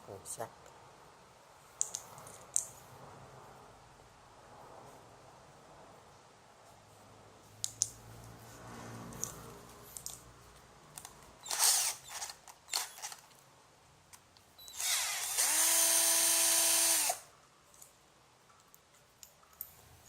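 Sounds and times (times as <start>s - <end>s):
cordless drill motor whining: 11.4s - 13.1s, 14.6s - 17.2s
cordless drill clicks: 11.4s - 13.2s, 14.6s - 17.2s.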